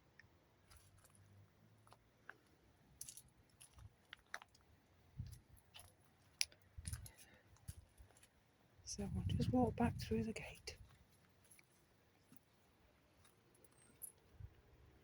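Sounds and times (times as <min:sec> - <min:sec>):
faint clicks and crunches: 0:00.1 - 0:08.4.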